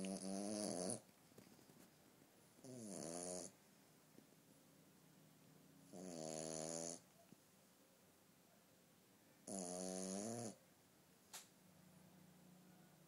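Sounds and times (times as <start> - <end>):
puppy snoring: 0.0 - 1.1, 2.6 - 3.6, 5.9 - 7.1, 9.4 - 10.6.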